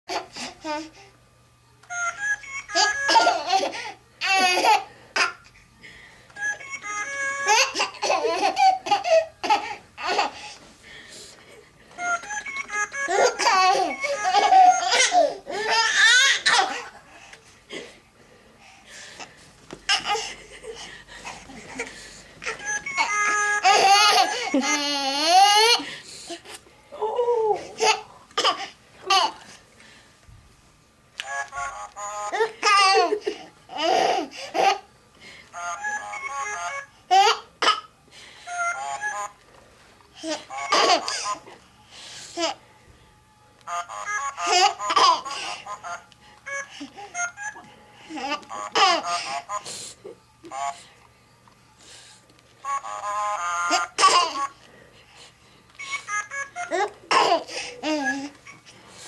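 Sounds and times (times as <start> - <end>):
baby laughing and babbling: 2.8 - 5.5, 7.4 - 10.5, 13.1 - 17.0, 21.4 - 25.8, 27.4 - 29.5, 32.4 - 34.9, 48.1 - 49.3, 56.5 - 58.4.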